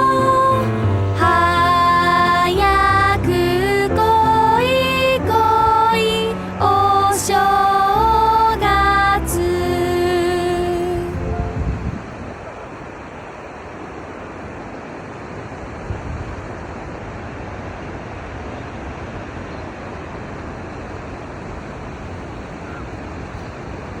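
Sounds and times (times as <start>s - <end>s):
ocean surf rushing: 0.0s - 24.0s
wind rumble on microphone: 7.5s - 24.0s.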